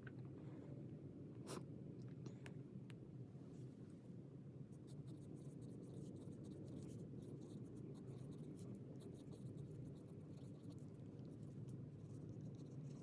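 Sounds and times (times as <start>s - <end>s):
steady low hum: 0.0s - 13.0s
pen scratching on paper: 5.0s - 13.0s.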